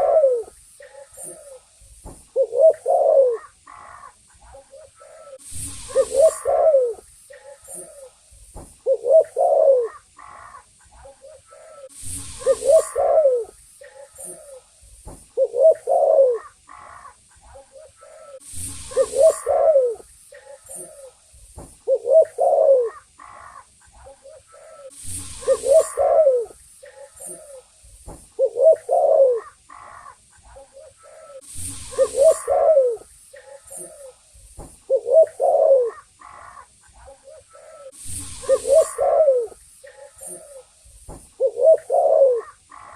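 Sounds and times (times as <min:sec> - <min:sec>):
dove cooing: 0:00.0 - 0:08.2, 0:08.8 - 0:14.7, 0:15.4 - 0:21.2, 0:21.8 - 0:27.7, 0:28.4 - 0:34.2, 0:34.9 - 0:40.7, 0:41.4 - 0:42.9
faint high hiss: 0:00.0 - 0:42.9.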